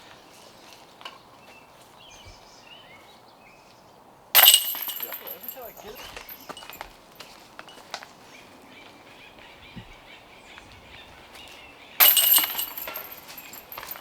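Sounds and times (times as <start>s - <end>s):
disc hitting basket chains: 4.4s - 6.8s, 12.0s - 14.0s.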